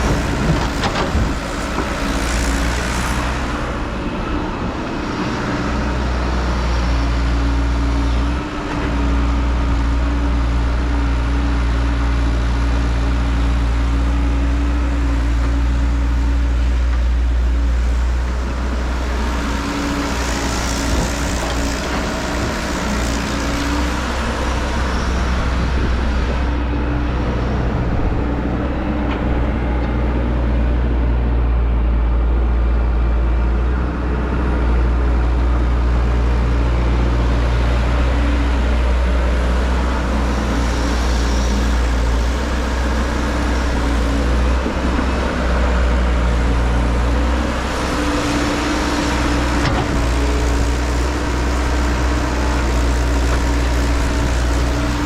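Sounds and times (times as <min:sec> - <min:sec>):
heavy vehicle engine droning: 0:00.0 - 0:55.0.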